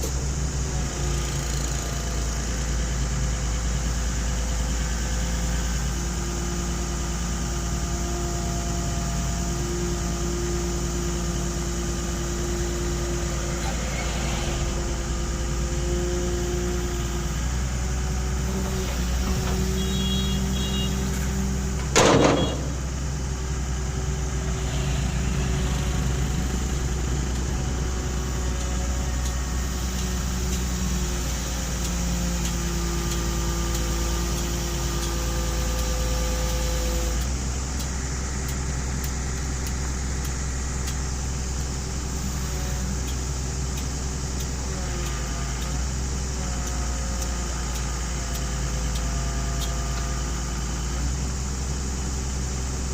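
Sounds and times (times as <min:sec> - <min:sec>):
excavator engine running: 0:00.0 - 0:52.9
short loud bang: 0:21.9 - 0:22.8.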